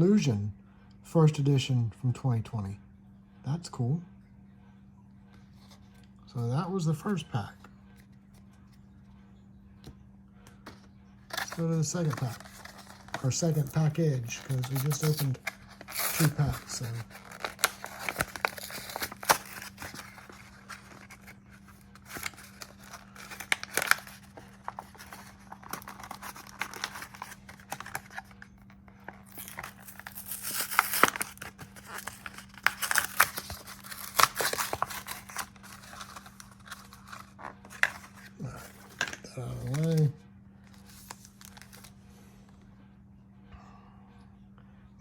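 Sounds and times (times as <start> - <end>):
faint low hum: 0.0 - 45.0
card package being torn open: 11.3 - 40.1, 40.7 - 41.9.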